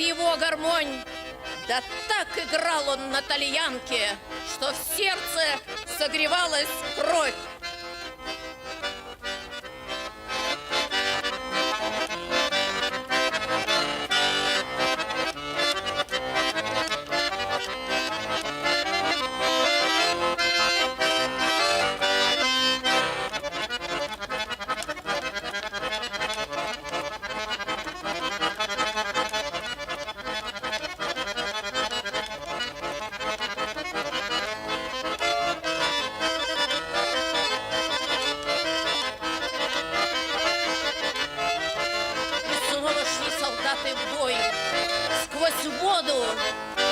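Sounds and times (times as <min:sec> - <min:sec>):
accordion playing folk melody: 0:00.0 - 0:46.9.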